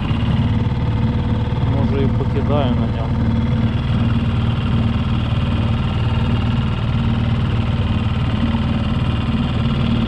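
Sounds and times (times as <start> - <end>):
outboard motor droning: 0.0 - 10.0.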